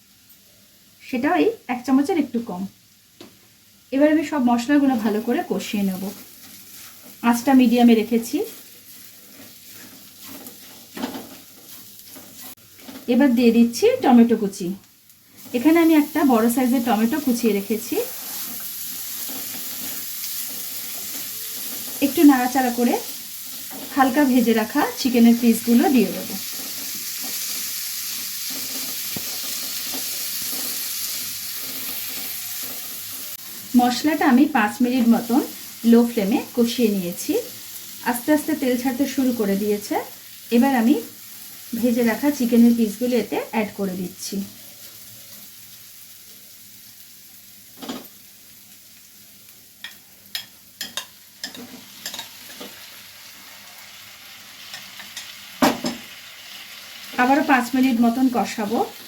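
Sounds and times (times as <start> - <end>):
food sizzling in hot oil: 0.0 - 59.0
spatula scraping a pan: 6.0 - 7.2, 8.4 - 13.2, 18.0 - 24.0, 26.4 - 33.4
spoon knocking a pan: 49.8 - 52.8, 54.7 - 56.1.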